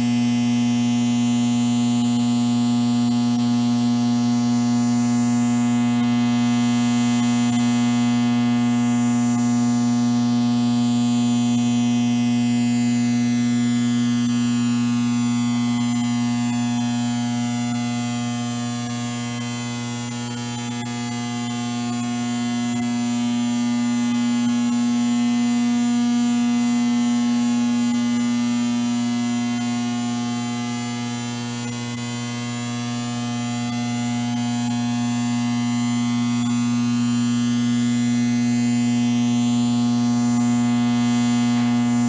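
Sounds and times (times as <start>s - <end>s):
electrical hum and buzz: 0.0s - 15.0s, 35.4s - 42.0s.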